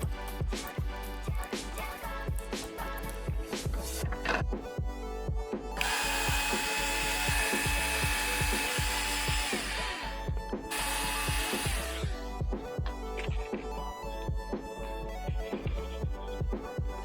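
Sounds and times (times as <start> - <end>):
electric drill motor running: 5.8 - 12.2.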